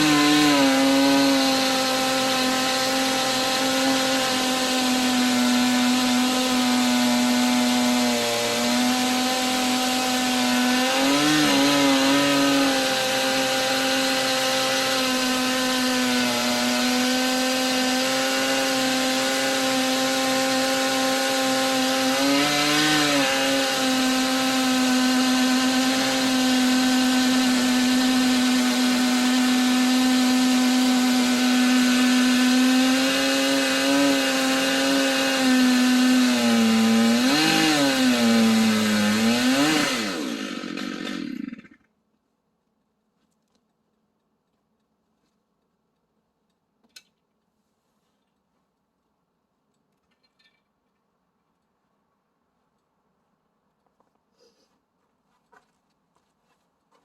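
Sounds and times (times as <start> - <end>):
chainsaw at full throttle cutting log: 0.0 - 41.9.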